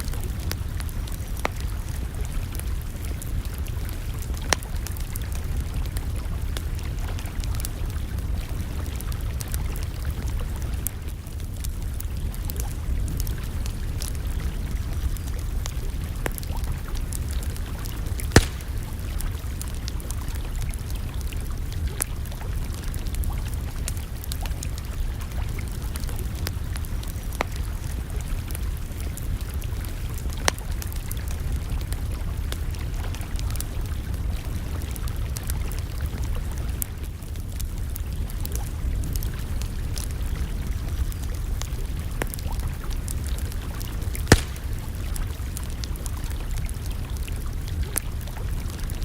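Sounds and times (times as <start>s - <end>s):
campfire crackling: 0.0s - 49.0s
sharp fire pops: 17.2s - 19.9s, 44.1s - 45.7s.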